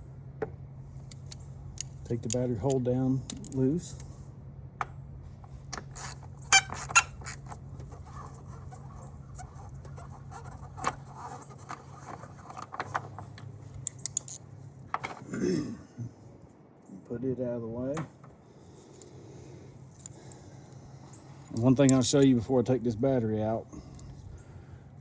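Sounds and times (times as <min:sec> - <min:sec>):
steady low hum: 0:00.0 - 0:25.0
ratchet metal clicks and squeaks: 0:01.0 - 0:04.2, 0:05.5 - 0:14.4.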